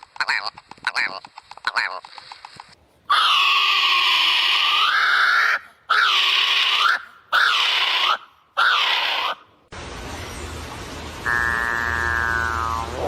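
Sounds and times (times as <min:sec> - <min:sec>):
bird screaming harshly: 0:03.1 - 0:09.4.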